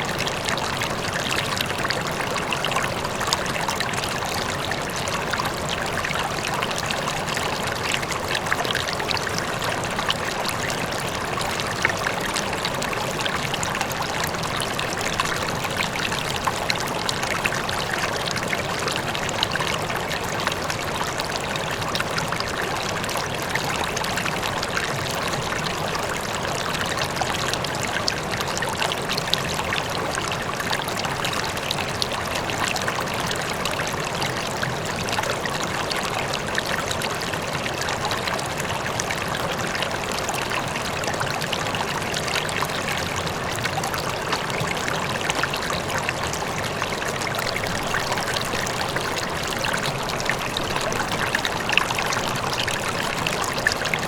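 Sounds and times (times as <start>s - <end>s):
river flowing: 0.0s - 54.0s.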